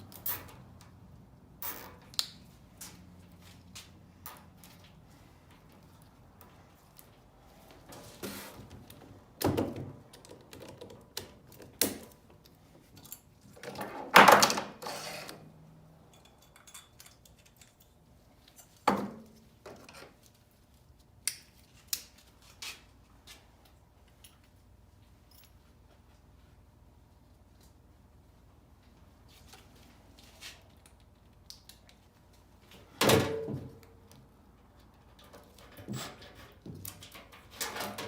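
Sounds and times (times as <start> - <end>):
tools and metal parts clinking: 16.0 - 18.9.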